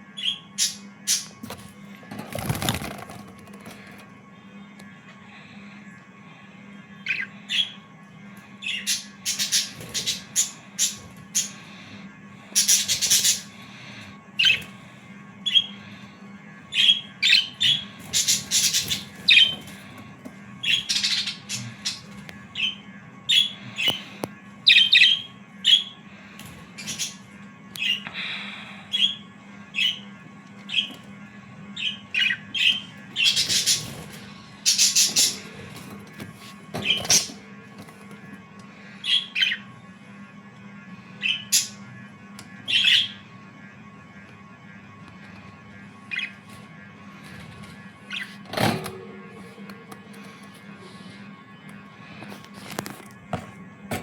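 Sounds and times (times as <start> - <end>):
faint steady hum: 0.0 - 54.0
budgerigars chirping and squawking: 0.2 - 1.7, 7.0 - 7.8, 8.6 - 14.8, 15.4 - 16.0, 16.7 - 20.0, 20.6 - 29.2, 29.8 - 31.1, 31.8 - 36.0, 36.8 - 37.4, 39.0 - 39.7, 41.2 - 41.8, 42.7 - 43.2, 46.1 - 46.6, 47.2 - 48.4.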